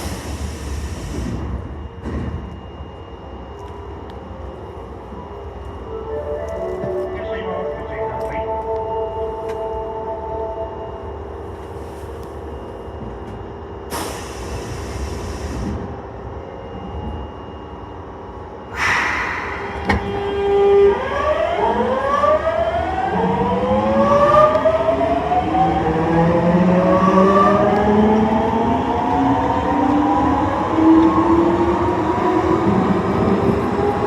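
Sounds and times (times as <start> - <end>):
burst of hiss: 18.7 - 20.2
sharp sound: 18.7 - 20.8.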